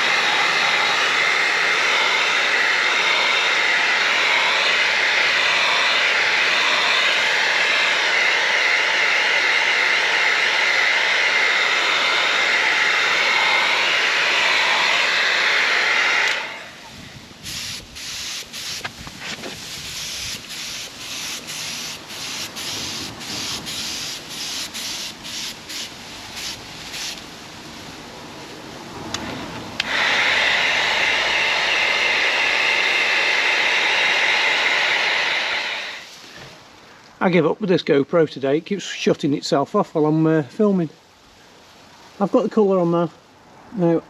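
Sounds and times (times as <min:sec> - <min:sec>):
paint spray gun hissing: 0:00.0 - 0:16.8, 0:17.4 - 0:27.3, 0:29.8 - 0:36.2.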